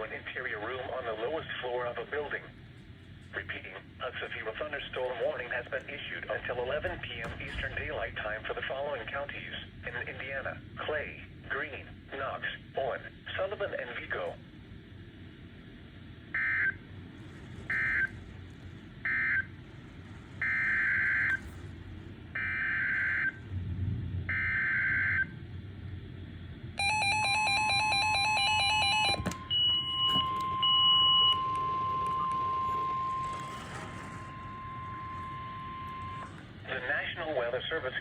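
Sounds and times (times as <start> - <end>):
steady warning alarm tone: 0.0 - 10.8, 16.0 - 25.5, 26.8 - 38.0
rapid pulsing alert beeps: 26.8 - 37.2.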